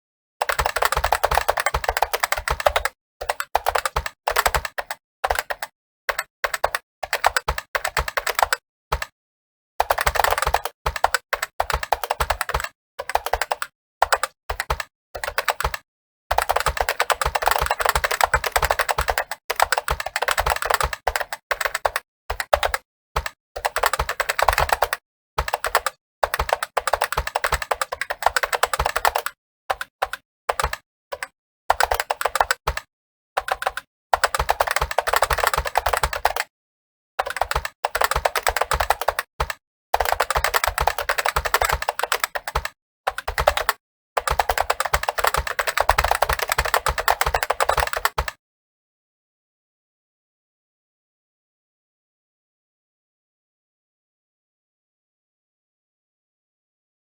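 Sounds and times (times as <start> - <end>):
fast keyboard typing: 0.4 - 9.2, 9.8 - 36.5, 37.2 - 48.4.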